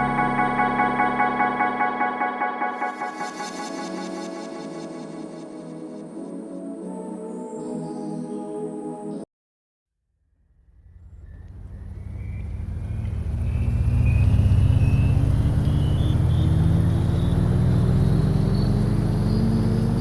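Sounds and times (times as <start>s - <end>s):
engine hum and whine rising: 10.4s - 20.0s.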